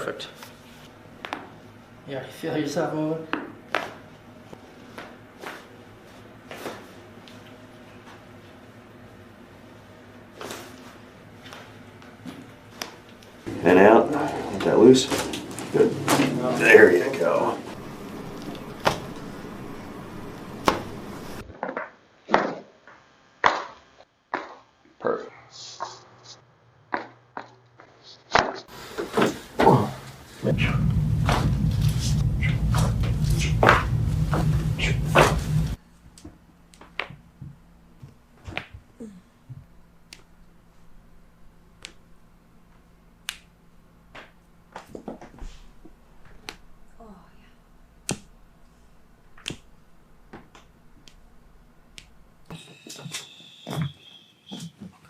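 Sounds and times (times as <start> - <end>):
loud burst of noise: 13.5 - 21.4, 30.3 - 35.8.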